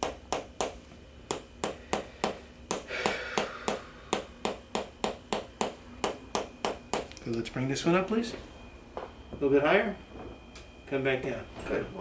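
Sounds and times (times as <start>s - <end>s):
breathy hiss: 1.8s - 4.3s.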